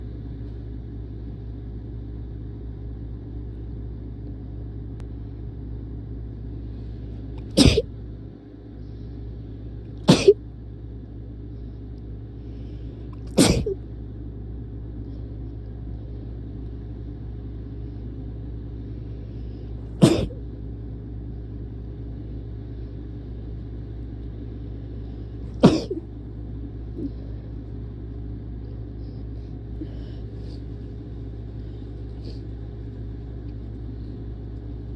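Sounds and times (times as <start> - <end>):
steady low rumble: 0.0 - 34.9
person sneezing: 7.4 - 7.9, 10.1 - 10.4, 13.2 - 13.8, 20.0 - 20.4, 25.5 - 26.1.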